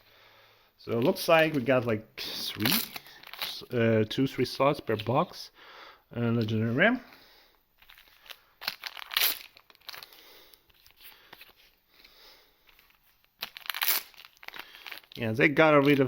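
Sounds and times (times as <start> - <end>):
plastic wrapper crinkling: 0.9 - 3.8, 7.8 - 16.0.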